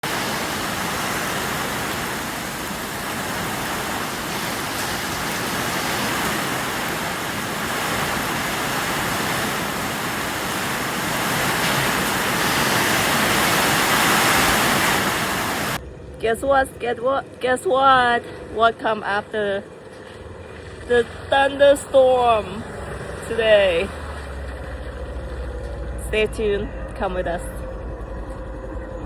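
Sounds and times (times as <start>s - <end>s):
steady rain hiss: 0.0s - 15.8s.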